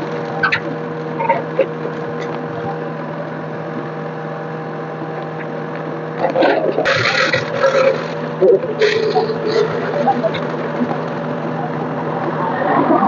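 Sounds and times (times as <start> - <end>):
tractor engine idling: 0.0 - 12.4
clatter: 6.2 - 11.9.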